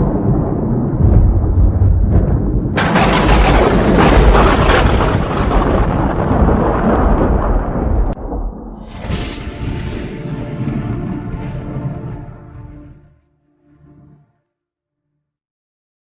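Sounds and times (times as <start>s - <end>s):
rain: 0.0s - 12.2s
loud thunderclap: 0.0s - 12.4s
thunder rumbling: 0.0s - 13.0s.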